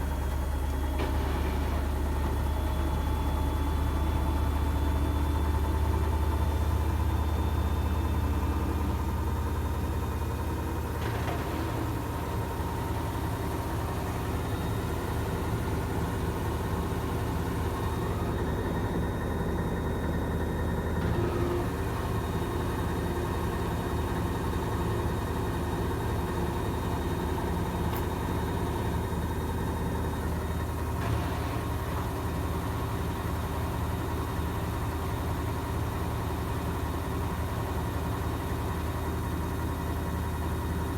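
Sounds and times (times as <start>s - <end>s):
washing machine spinning: 8.8s - 40.9s.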